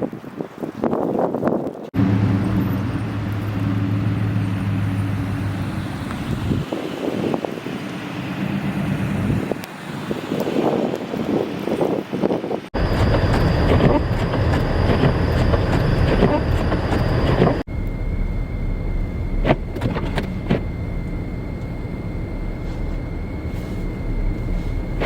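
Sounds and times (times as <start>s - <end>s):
blizzard wind: 0.0s - 25.0s
traffic rumble: 1.6s - 25.0s
steady high tone: 12.8s - 25.0s.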